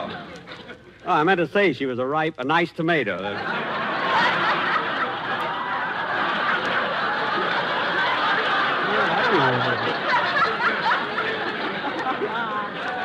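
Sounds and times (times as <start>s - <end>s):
studio audience laughing: 0.0s - 1.0s, 3.2s - 13.0s.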